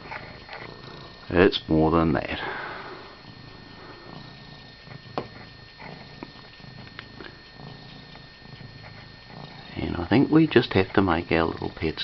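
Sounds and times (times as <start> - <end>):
cat purring: 0.0 - 12.0.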